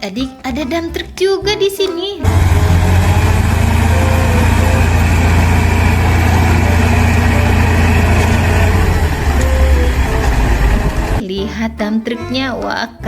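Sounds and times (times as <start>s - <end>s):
truck engine idling: 2.2s - 11.2s.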